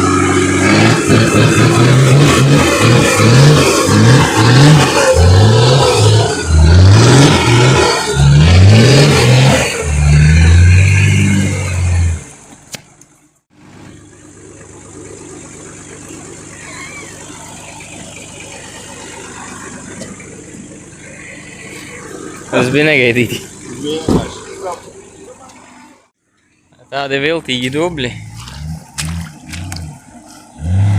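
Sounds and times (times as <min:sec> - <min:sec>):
engine revving hard: 0:00.0 - 0:12.3, 0:27.8 - 0:30.9
quiet steady engine hum: 0:12.0 - 0:30.9.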